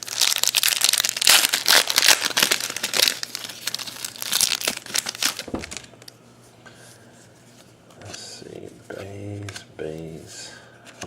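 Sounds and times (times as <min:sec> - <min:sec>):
wrappers crinkling and tearing: 0:00.0 - 0:06.1.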